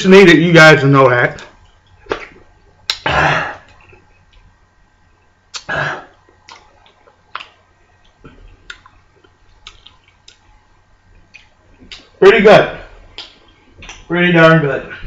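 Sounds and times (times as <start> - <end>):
man clearing throat: 3.0 - 3.8, 5.6 - 6.2
chewing clicks and smacks: 5.5 - 10.5, 11.1 - 12.1.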